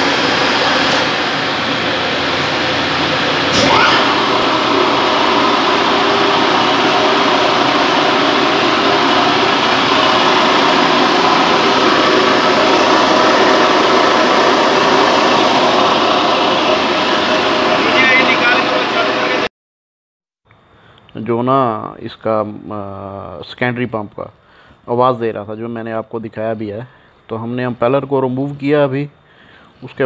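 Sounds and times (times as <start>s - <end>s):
water pump running: 0.0s - 19.5s.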